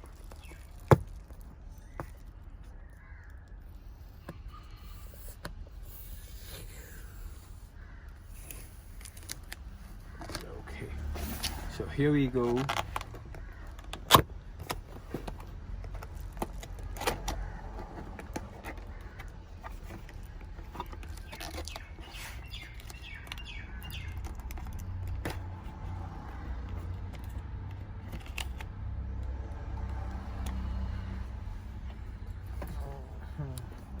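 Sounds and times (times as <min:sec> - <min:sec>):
box packaging clicks and knocks: 0:00.4 - 0:02.3
bird chirps: 0:21.1 - 0:24.3.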